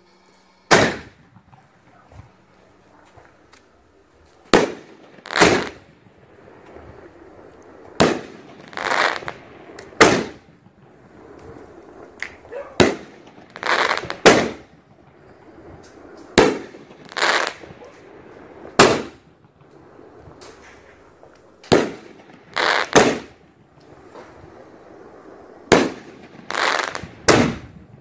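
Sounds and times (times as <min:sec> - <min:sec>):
fireworks shells bursting: 0:00.0 - 0:24.8, 0:25.7 - 0:28.0
fireworks shots firing: 0:00.7 - 0:28.0.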